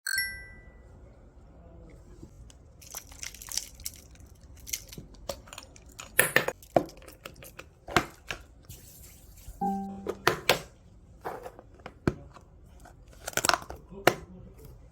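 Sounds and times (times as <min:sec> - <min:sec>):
crinkling and clicking: 0:02.8 - 0:07.7
short bright chime: 0:09.6 - 0:10.2.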